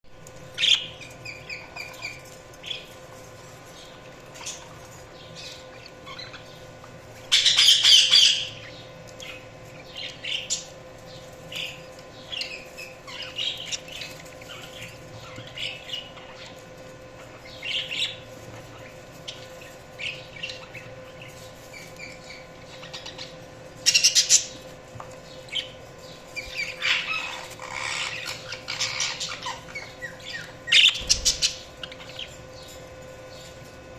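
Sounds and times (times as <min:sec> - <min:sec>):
budgerigars chirping and chattering: 0:00.3 - 0:03.0, 0:03.7 - 0:33.6.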